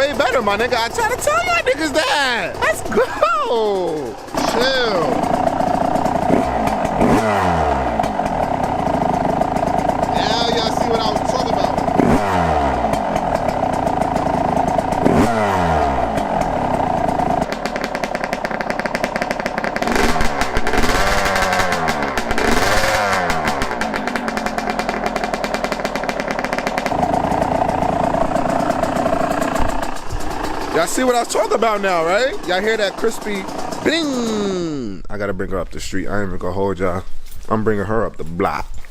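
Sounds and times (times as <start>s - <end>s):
person speaking: 0.0s - 5.4s, 30.7s - 36.7s
motorcycle engine idling and revving: 0.0s - 38.9s.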